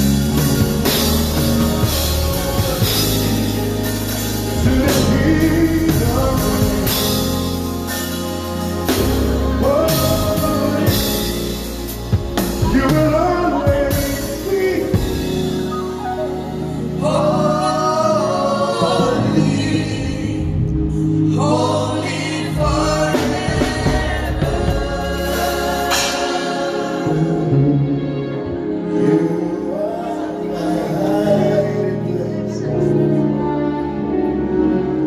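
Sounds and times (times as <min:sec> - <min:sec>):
backing singers: 0:00.0 - 0:11.6, 0:12.4 - 0:33.4
drum kit: 0:00.0 - 0:20.6, 0:21.4 - 0:27.6
bass: 0:00.0 - 0:35.0
keyboard: 0:00.0 - 0:35.0
person singing: 0:00.0 - 0:35.0.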